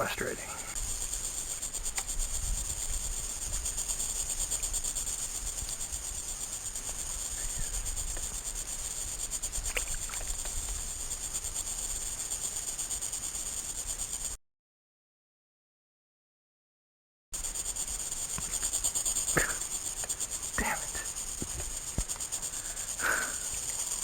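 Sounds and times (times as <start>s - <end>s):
pulsing insect chorus: 0.0s - 14.4s, 17.4s - 24.0s.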